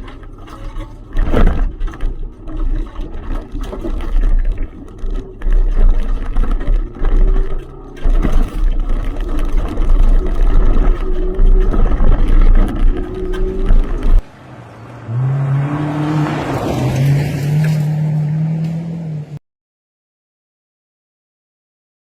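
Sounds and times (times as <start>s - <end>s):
rally car engine revving: 0.0s - 19.4s
road and wind rumble: 0.0s - 19.4s.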